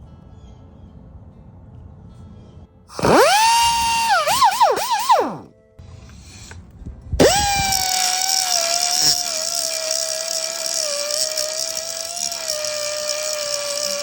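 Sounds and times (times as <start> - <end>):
die grinder high whine: 2.9 - 5.5, 7.2 - 14.0.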